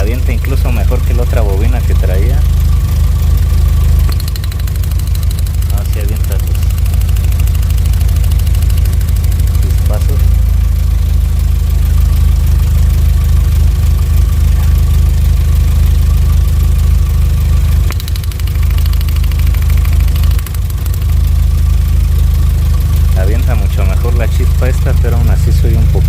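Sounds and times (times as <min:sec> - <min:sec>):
car engine idling with misfire: 0:00.0 - 0:26.0
fine regular clicking: 0:04.0 - 0:10.2, 0:17.8 - 0:21.4.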